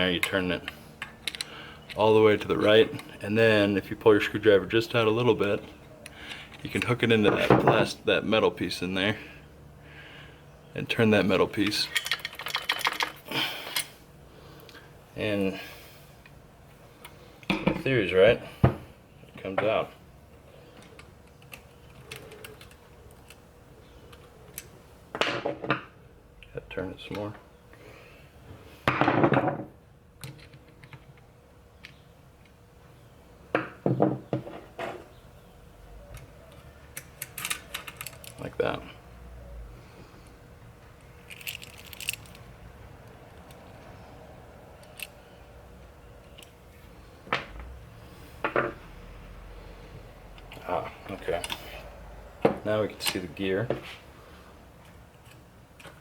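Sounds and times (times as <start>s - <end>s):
screwdriver and metal parts clicking: 11.6s - 13.9s, 36.5s - 38.5s, 41.0s - 42.4s.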